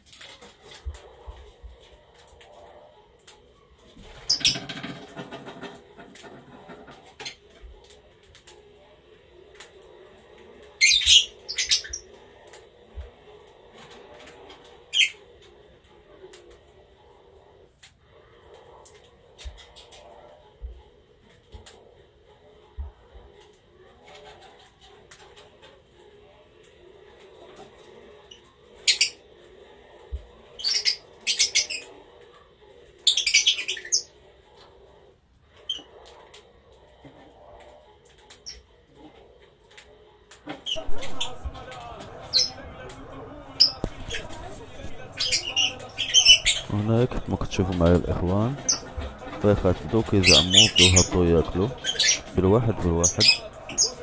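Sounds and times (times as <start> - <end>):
parrots squawking: 40.7 - 54.0.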